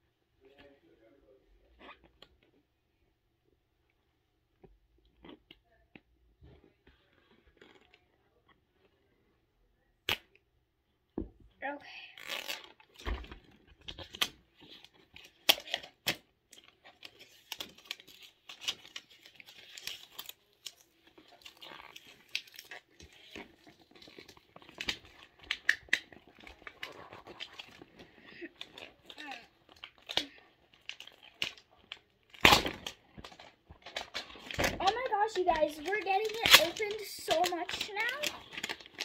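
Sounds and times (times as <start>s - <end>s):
packaging crinkling and tearing: 12.2s - 39.0s.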